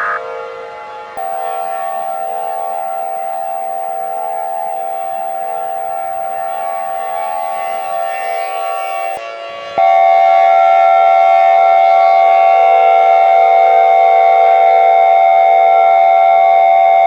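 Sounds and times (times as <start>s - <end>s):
emergency alert siren tone: 1.2s - 9.2s.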